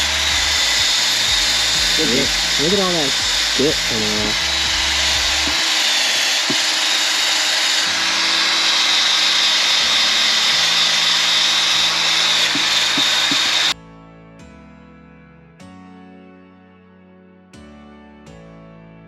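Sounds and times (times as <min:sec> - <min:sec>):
soft music: 0:00.0 - 0:06.5, 0:07.8 - 0:19.0.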